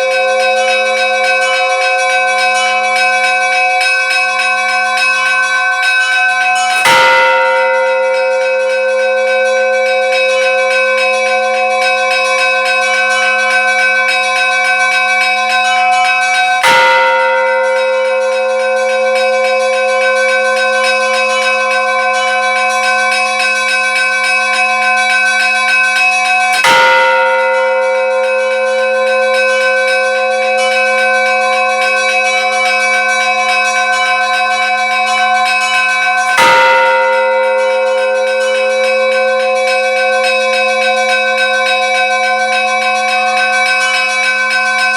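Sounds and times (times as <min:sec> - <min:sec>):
bells ringing: 0:00.0 - 0:44.9
loud bell strike: 0:05.9 - 0:11.1, 0:15.9 - 0:21.3, 0:26.5 - 0:30.9, 0:34.9 - 0:42.4.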